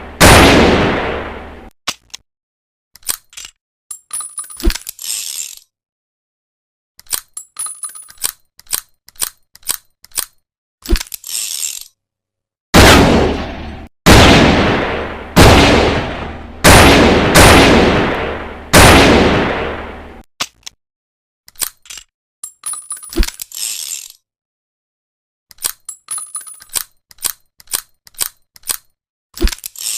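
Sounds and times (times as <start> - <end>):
small metallic clicks: 3.0 - 5.7, 7.0 - 12.0, 21.5 - 24.2, 25.5 - 29.9.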